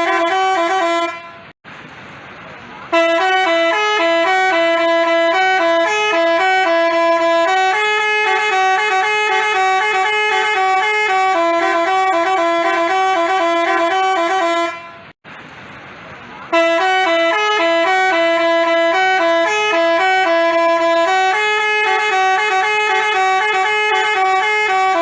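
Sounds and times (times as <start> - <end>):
bus horn playing a melody: 0.0 - 1.6, 2.9 - 15.2, 16.5 - 25.0.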